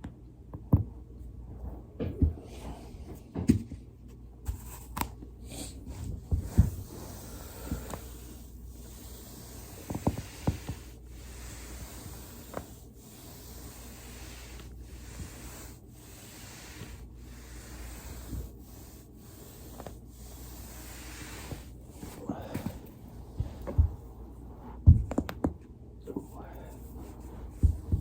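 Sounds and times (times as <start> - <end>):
steady hiss: 5.5 - 24.1.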